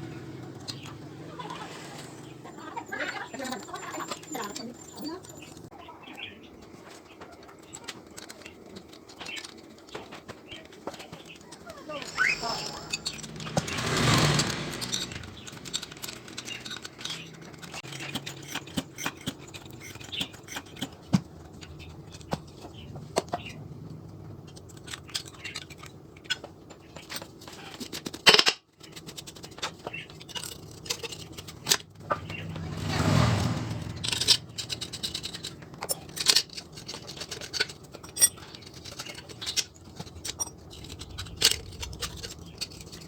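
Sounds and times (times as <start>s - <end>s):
clicks and taps on small parts: 6.6s - 11.6s, 14.9s - 32.7s
rush of noise: 11.8s - 15.6s.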